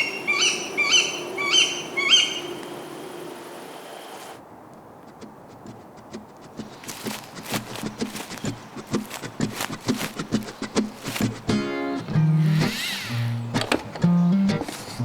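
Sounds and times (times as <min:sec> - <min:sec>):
clopping footsteps: 0:04.7 - 0:12.1.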